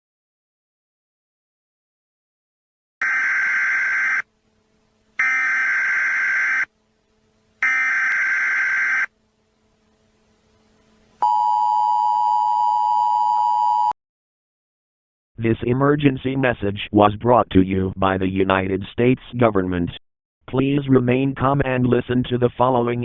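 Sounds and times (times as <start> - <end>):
buzzing data tone bursts: 5.2 - 6.7, 7.6 - 9.1.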